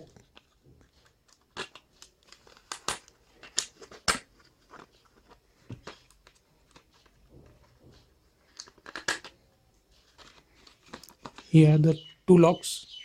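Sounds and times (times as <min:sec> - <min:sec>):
plastic packaging crinkling: 0:00.0 - 0:07.1.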